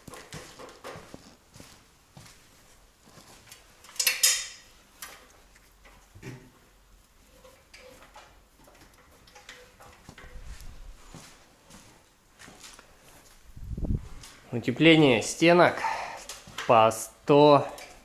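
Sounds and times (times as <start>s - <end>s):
metal parts clicking: 3.8s - 5.3s.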